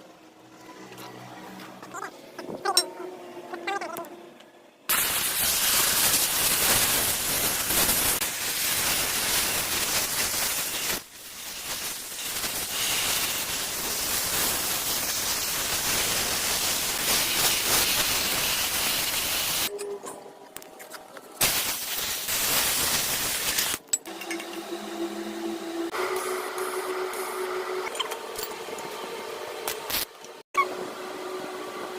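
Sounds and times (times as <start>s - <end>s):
welding arc hissing: 4.9s - 19.7s, 21.4s - 23.8s, 29.6s - 30.2s.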